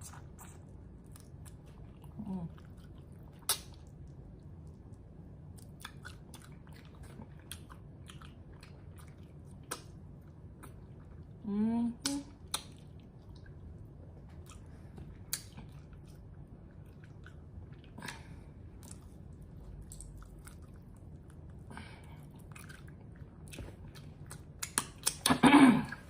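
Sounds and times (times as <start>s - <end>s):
mouth clicks and smacks: 3.3s - 3.9s, 9.0s - 10.0s, 12.0s - 13.5s, 15.3s - 15.8s, 23.5s - 25.4s
person chewing and biting: 18.8s - 21.6s, 22.3s - 25.3s.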